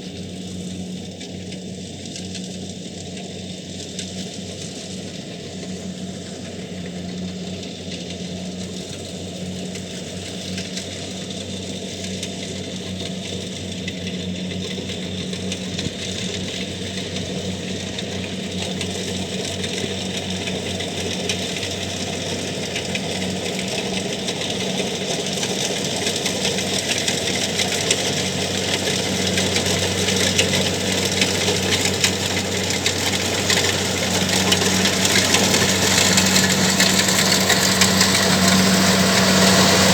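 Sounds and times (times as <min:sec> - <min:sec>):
diesel engine humming: 0:14.7 - 0:39.9
threshing mechanism rattling: 0:28.8 - 0:39.9.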